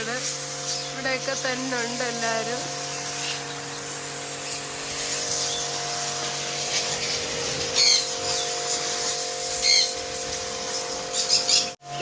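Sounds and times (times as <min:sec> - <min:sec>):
pressure washer motor hum: 0:00.0 - 0:12.0
water jet spraying: 0:00.0 - 0:12.0
bird calls: 0:06.7 - 0:08.5, 0:09.6 - 0:10.0, 0:11.1 - 0:11.8.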